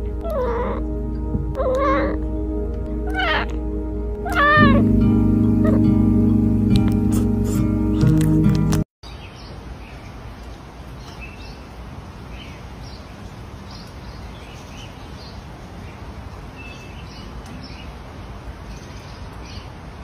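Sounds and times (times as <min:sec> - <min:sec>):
small birds chirping: 0:09.0 - 0:19.9.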